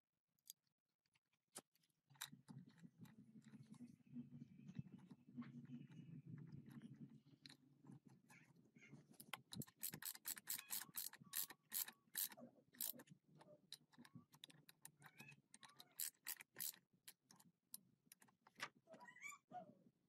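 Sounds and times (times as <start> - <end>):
mechanical clicking and ticking: 9.2 - 13.1, 13.7 - 17.5.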